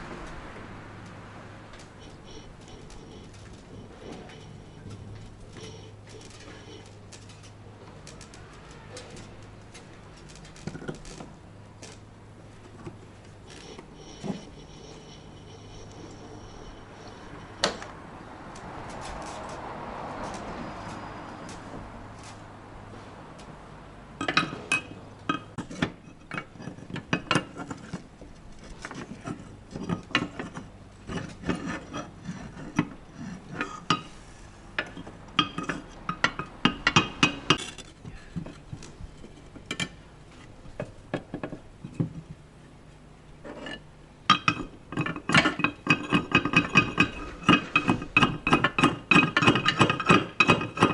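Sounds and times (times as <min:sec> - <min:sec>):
hard clinking and knocking: 0:01.8 - 0:12.0, 0:24.2 - 0:40.0, 0:43.5 - 0:50.9.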